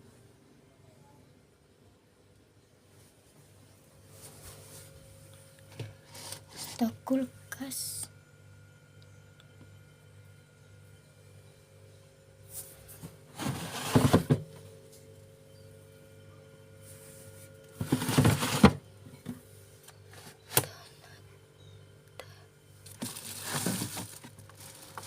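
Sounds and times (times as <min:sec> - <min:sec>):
refrigerator hum: 0:00.0 - 0:25.0
items rustling and scraping in fridge: 0:02.9 - 0:07.8, 0:12.4 - 0:15.1, 0:16.8 - 0:21.1, 0:22.8 - 0:25.0.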